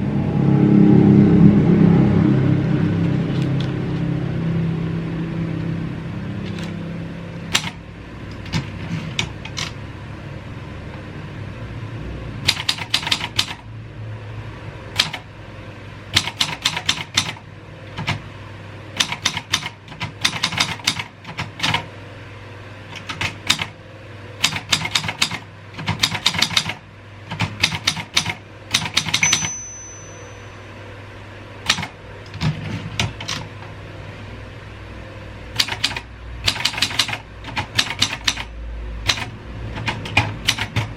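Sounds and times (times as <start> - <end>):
steady low hum: 0.0 - 12.5, 28.4 - 40.9
typewriter key strikes: 16.2 - 17.4, 19.0 - 21.8, 24.4 - 29.6, 35.6 - 38.5, 39.1 - 40.9
typewriter margin bell ring: 29.0 - 30.6.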